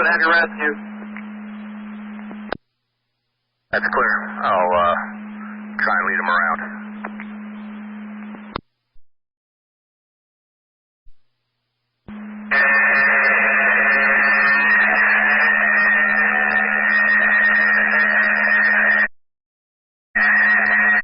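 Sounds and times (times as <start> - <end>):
radio low hum: 0.0 - 2.6, 3.7 - 8.9, 12.1 - 19.1, 20.2 - 21.0
radio static hiss: 0.0 - 2.6, 3.7 - 8.6, 12.5 - 19.1, 20.2 - 21.0.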